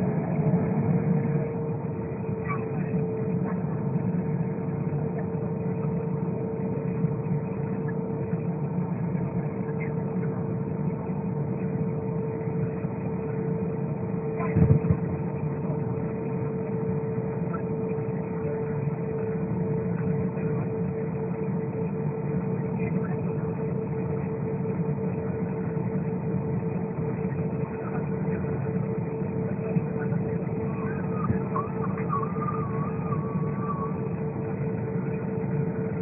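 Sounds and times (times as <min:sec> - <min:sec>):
jet engine cabin drone: 0:00.0 - 0:36.0
steady whine: 0:00.0 - 0:36.0.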